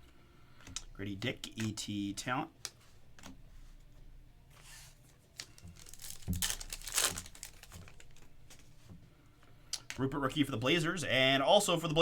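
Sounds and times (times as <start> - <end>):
foil wrapper crinkling and tearing: 5.3 - 8.2.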